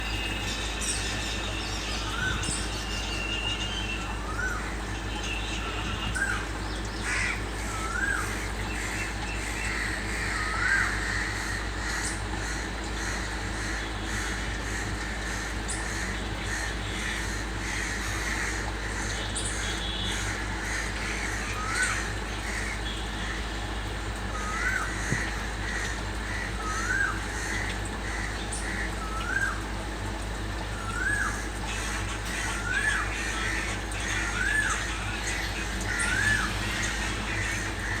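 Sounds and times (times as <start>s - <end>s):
cuckoo calling: 0.0s - 11.0s, 28.5s - 29.8s, 30.6s - 38.0s
crows cawing: 6.1s - 29.7s, 30.6s - 38.0s.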